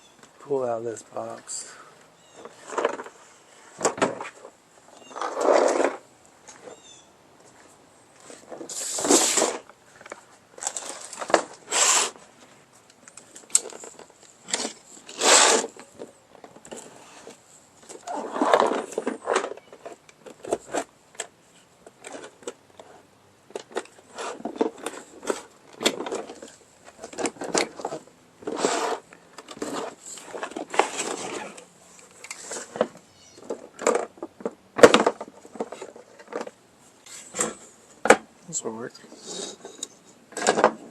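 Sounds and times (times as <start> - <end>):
packing material rustling: 10.6 - 12.2.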